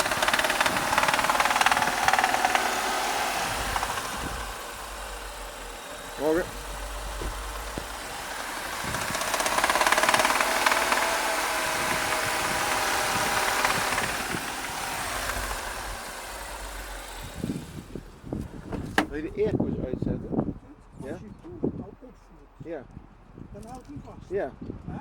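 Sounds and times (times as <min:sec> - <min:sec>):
car engine with metallic rattle: 0:00.0 - 0:19.5.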